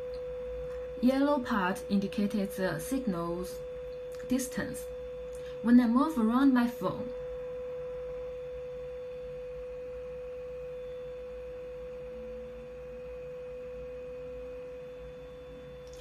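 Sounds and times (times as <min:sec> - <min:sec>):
pure test tone from phone speaker: 0:00.0 - 0:16.0.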